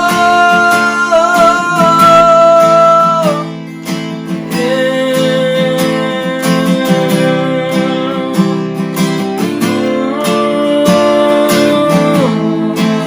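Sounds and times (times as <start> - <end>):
worship band playing: 0.0 - 3.5
acoustic guitar strumming: 0.0 - 13.0.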